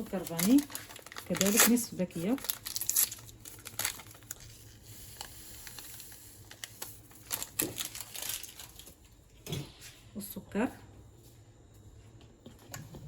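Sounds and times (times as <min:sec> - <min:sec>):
paper sachet crinkling: 0:00.0 - 0:09.0.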